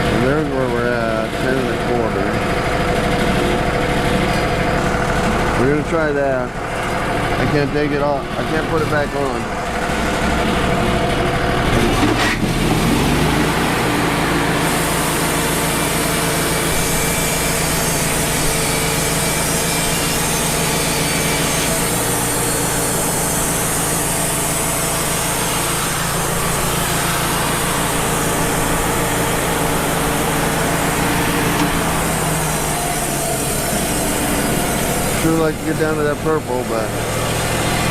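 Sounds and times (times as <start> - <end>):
sawmill engine revving: 0.0 - 37.9
band blade sawing wood: 11.7 - 37.9.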